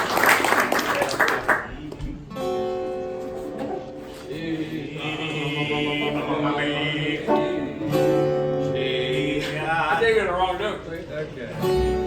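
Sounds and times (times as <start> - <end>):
male voices chanting drone chord: 4.1 - 10.3.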